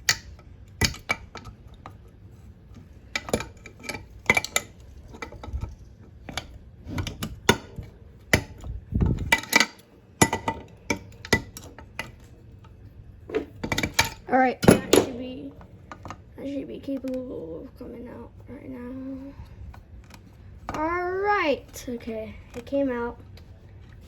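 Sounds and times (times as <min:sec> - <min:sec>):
metal tool clinking on engine parts: 0:00.0 - 0:12.3, 0:13.3 - 0:15.2.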